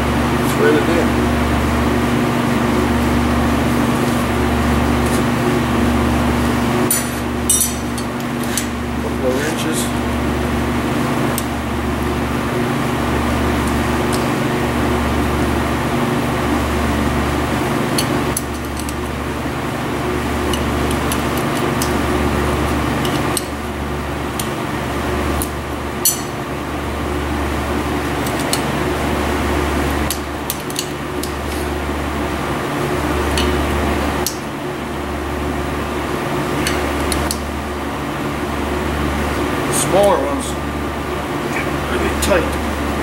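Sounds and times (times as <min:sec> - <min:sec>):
electric machine hum: 0:00.0 - 0:43.0.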